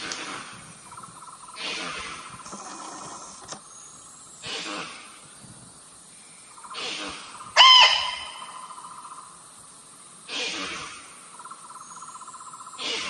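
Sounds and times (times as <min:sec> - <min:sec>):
insect trill: 0:00.2 - 0:13.0
high-pitched deer call bleat: 0:07.6 - 0:08.6.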